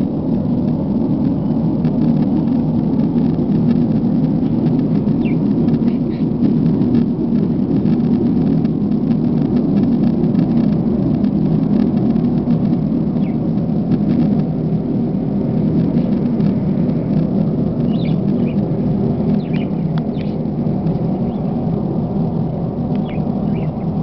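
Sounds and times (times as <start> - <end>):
low droning rumble: 0.0 - 24.0
high bird chirps: 17.9 - 18.6.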